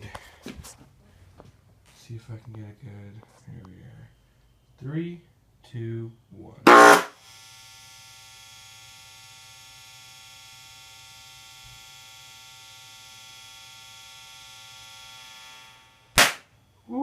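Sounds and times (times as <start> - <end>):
loudspeaker mains hum buzzing: 6.7 - 7.1.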